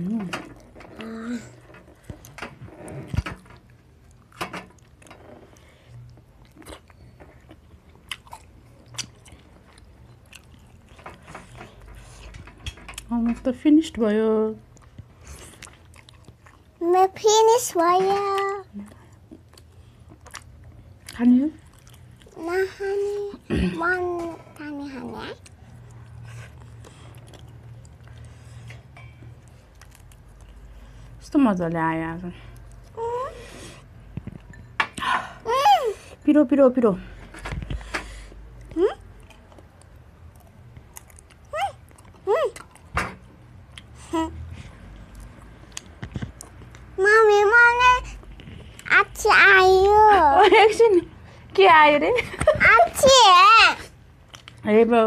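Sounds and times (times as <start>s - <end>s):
person chewing food: 3.1s - 12.4s, 14.7s - 16.8s, 18.4s - 22.8s, 25.3s - 31.2s, 38.2s - 42.9s, 43.5s - 47.0s, 54.2s - 54.6s.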